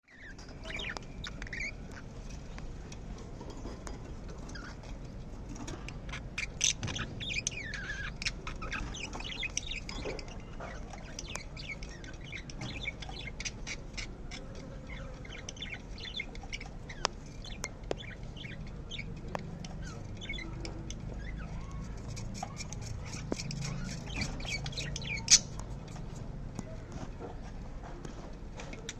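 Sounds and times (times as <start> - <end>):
lovebird chirping: 0.0 - 2.1, 6.1 - 26.2.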